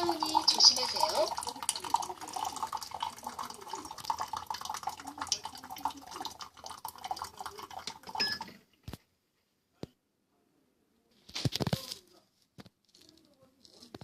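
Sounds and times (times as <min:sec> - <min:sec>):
hot water pouring into cup: 0:00.0 - 0:08.6.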